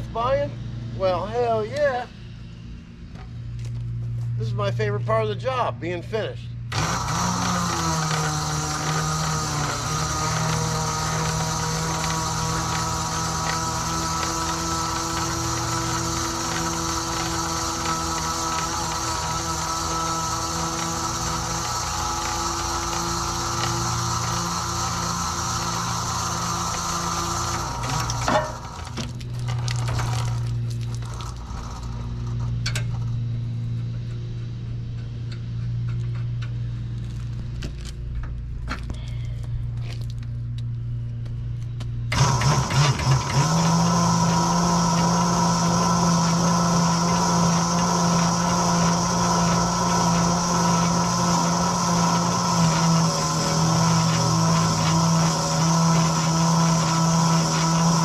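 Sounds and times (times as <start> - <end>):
engine running: 0.0 - 58.0.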